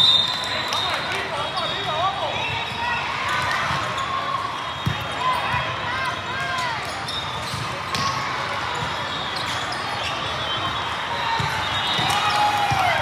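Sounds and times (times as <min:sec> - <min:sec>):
sneakers squeaking on court floor: 0:00.0 - 0:13.0.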